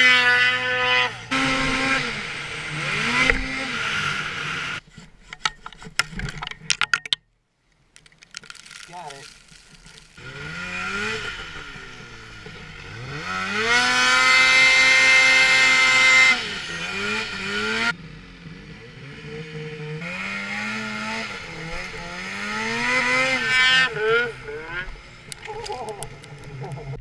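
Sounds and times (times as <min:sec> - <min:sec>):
snowmobile engine revving: 0:00.0 - 0:04.8, 0:08.6 - 0:27.0.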